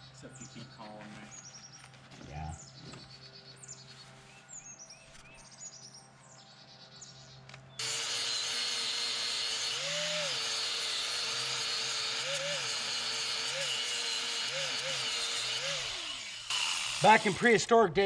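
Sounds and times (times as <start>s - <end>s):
birds chirping: 0.0s - 8.1s
angle grinder grinding wood: 7.8s - 17.8s.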